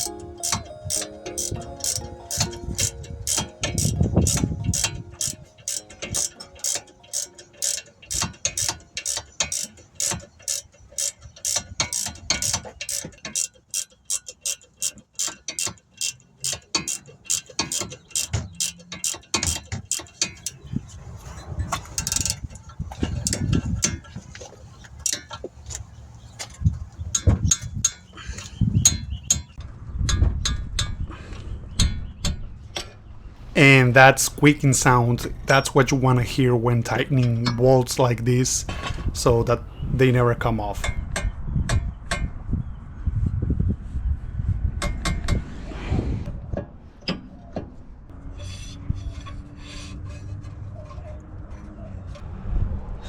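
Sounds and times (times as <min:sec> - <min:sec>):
ratchet wrench clicking: 0:00.0 - 0:20.8, 0:21.8 - 0:24.0.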